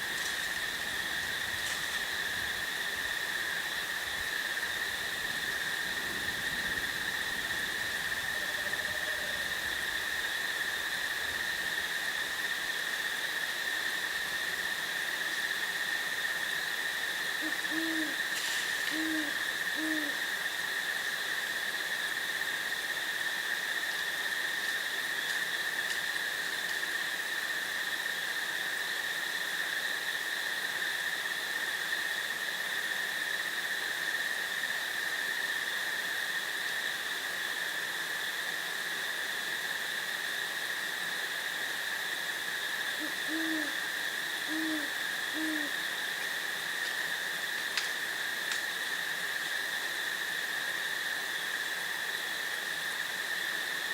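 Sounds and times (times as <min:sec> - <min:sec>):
crickets chirping: 0:00.0 - 0:53.9
owl hooting: 0:08.2 - 0:09.7, 0:17.4 - 0:20.3, 0:43.0 - 0:45.8.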